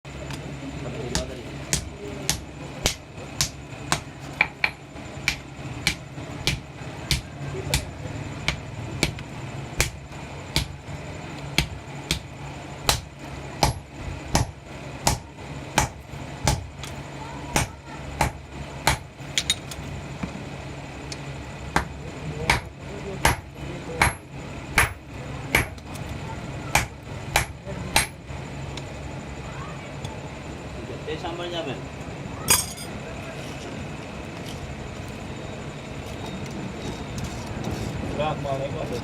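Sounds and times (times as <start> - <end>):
steady low hum: 0.0 - 39.0
hammer striking copper: 1.1 - 10.8, 11.5 - 16.9, 17.5 - 19.6, 21.7 - 25.8, 26.7 - 28.2.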